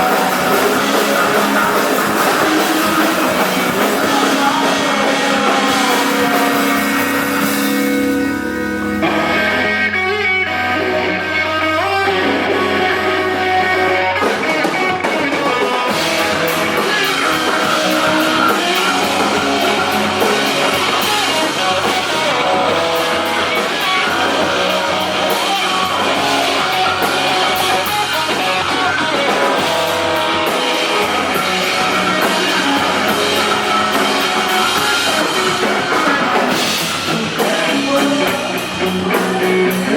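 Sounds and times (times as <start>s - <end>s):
drum kit with crashing cymbals: 0.0s - 9.4s, 14.2s - 39.9s
electric guitars: 0.0s - 39.9s.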